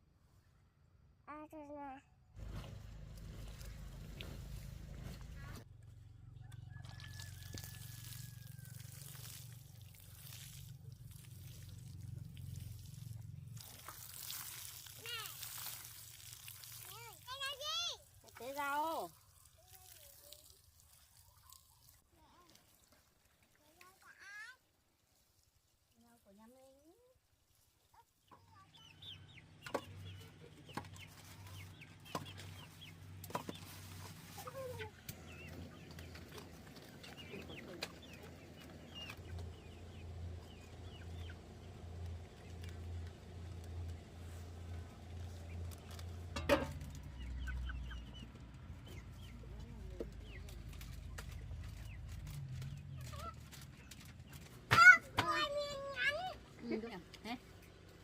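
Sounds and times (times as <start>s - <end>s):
water sloshing and splashing: 2.4s - 5.6s, 6.8s - 23.8s
chickens clucking: 28.2s - 42.7s, 45.4s - 54.5s.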